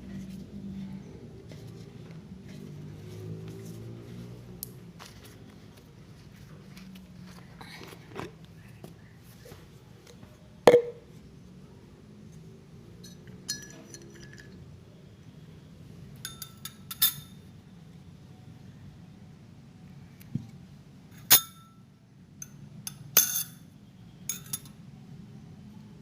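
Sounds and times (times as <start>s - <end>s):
spoon clinking against glass: 13.0s - 14.6s, 16.2s - 17.4s, 22.4s - 23.6s, 24.3s - 24.8s.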